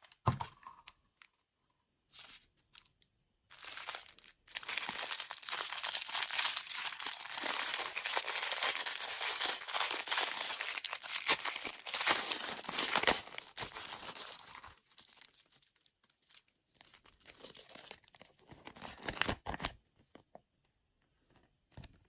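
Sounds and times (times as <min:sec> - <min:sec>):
plastic packaging crinkling: 0:03.5 - 0:15.9.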